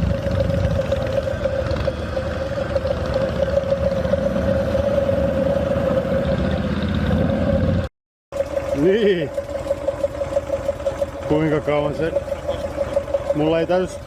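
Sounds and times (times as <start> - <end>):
motorcycle engine rumble: 0.0 - 7.9
high whine: 0.0 - 14.0.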